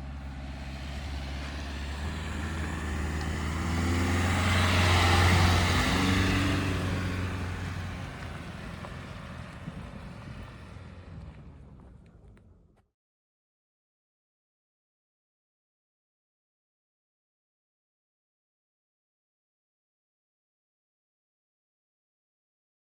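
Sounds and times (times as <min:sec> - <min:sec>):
car driving past: 0:00.0 - 0:12.4.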